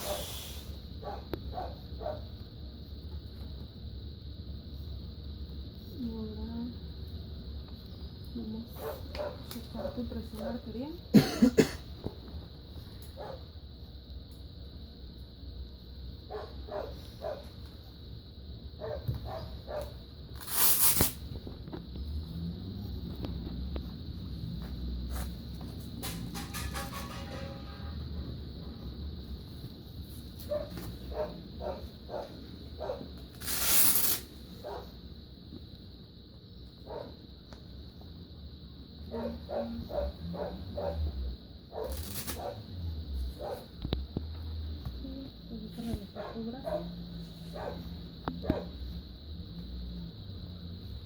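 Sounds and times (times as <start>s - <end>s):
air hissing from cuff valve: 0.0s - 1.0s, 20.4s - 21.3s, 33.3s - 34.4s
dog barking: 1.0s - 2.3s, 8.8s - 10.0s, 13.2s - 13.5s, 16.3s - 17.5s, 18.8s - 20.0s, 30.5s - 33.1s, 34.6s - 35.0s, 36.8s - 37.2s, 39.1s - 42.7s, 43.4s - 43.7s, 46.1s - 48.8s.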